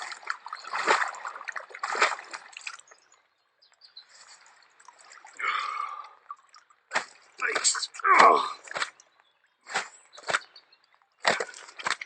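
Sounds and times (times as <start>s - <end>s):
fish splashing in water: 0.0s - 2.9s, 11.2s - 12.0s
gentle water sounds: 0.0s - 12.0s.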